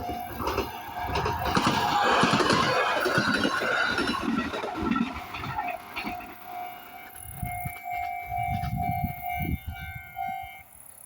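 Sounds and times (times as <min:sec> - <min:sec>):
train wheels rumbling thumps: 0:00.0 - 0:09.8
level crossing warning bell: 0:00.0 - 0:10.9.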